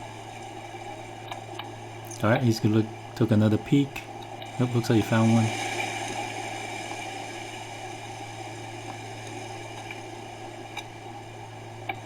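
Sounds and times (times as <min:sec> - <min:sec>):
electrical hum and hiss: 0:00.0 - 0:12.0
faint ticks: 0:01.2 - 0:02.4.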